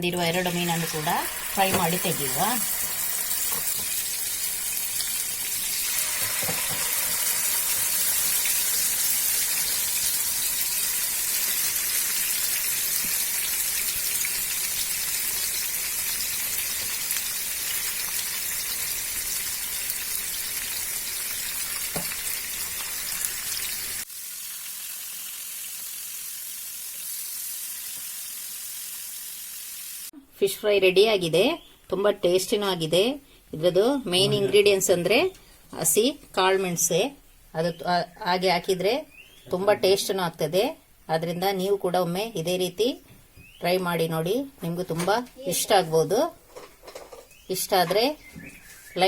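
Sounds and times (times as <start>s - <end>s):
fish sizzling in hot oil: 0.2s - 30.1s.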